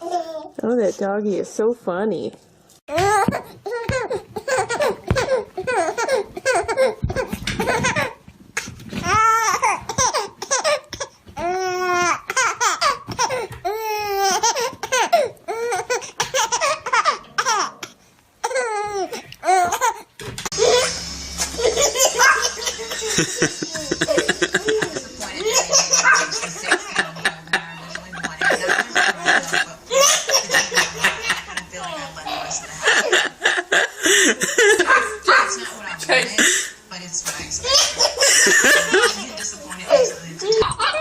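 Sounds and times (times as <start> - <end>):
baby laughing: 0.0 - 0.6, 2.9 - 8.2, 9.1 - 35.7, 37.6 - 41.0
steady low hum: 20.5 - 40.4.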